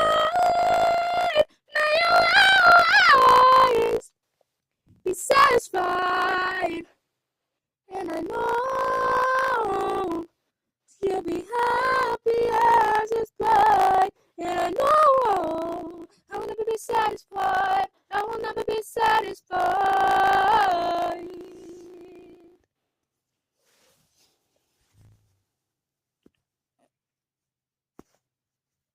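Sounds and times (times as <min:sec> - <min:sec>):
woman singing a cappella: 0:00.0 - 0:04.1, 0:05.1 - 0:07.0, 0:07.9 - 0:10.3, 0:11.0 - 0:22.6.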